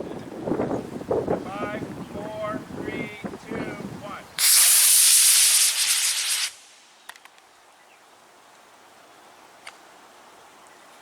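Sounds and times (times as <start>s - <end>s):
rocket motor hissing: 4.4s - 7.0s.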